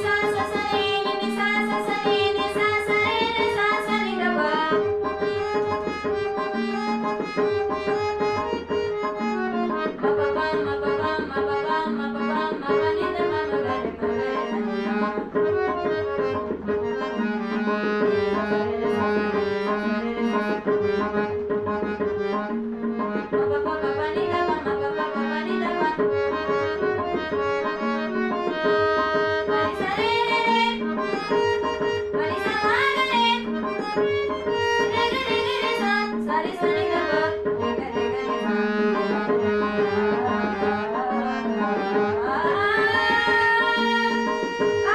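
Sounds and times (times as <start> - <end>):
young woman singing: 0.0 - 5.0, 10.2 - 14.6, 23.3 - 26.2, 29.5 - 34.0, 34.8 - 38.5, 40.2 - 44.9
hand drum rhythm: 0.0 - 41.6
reed instrument melody: 0.0 - 44.9.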